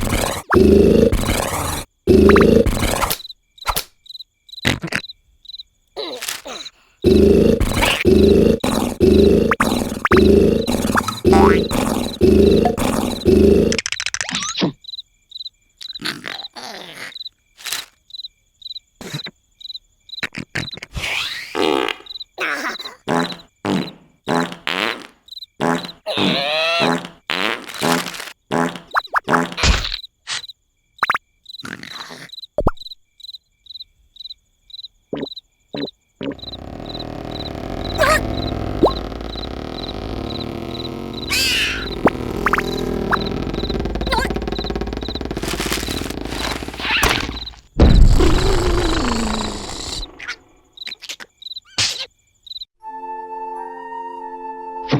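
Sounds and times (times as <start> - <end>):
cartoon snoring: 0.0 - 3.2, 6.0 - 13.9, 16.0 - 17.2, 22.4 - 25.0, 25.6 - 27.2, 35.2 - 50.4
crickets chirping: 0.0 - 20.9, 21.6 - 24.6, 25.2 - 27.0, 28.5 - 52.8
short sound effects: 36.3 - 50.0.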